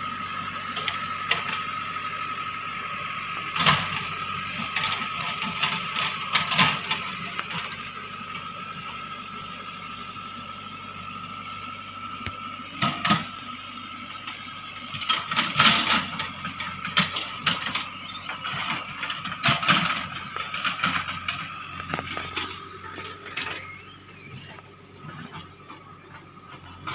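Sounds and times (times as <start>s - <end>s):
backhoe loader whine: 0.0s - 26.9s
metallic clanks and squeals: 3.2s - 7.7s, 14.3s - 26.9s.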